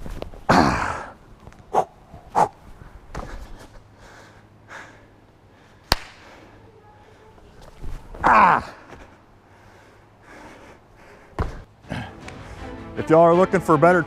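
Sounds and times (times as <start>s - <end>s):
man grunting: 0.5s - 1.2s, 8.2s - 8.8s
man panting: 1.8s - 7.3s, 8.5s - 12.7s.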